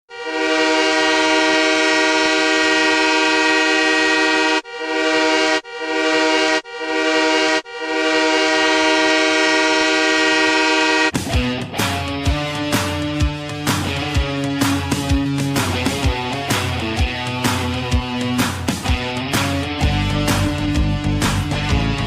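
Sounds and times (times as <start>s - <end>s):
arena goal horn blasts: 0.1s - 11.2s.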